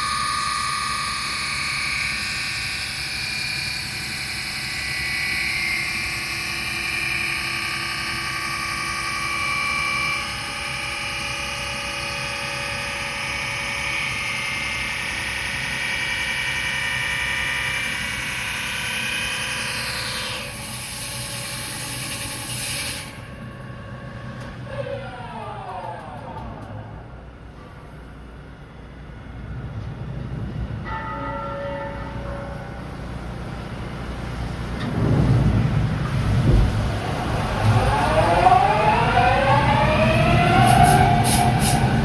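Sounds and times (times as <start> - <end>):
lathe machine whine: 0.0 - 27.4, 36.9 - 42.0.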